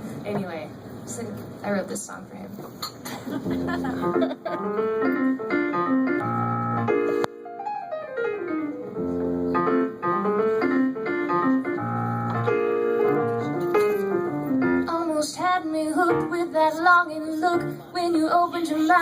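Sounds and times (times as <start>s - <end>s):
piano playing chords: 3.4s - 15.2s, 15.8s - 17.8s.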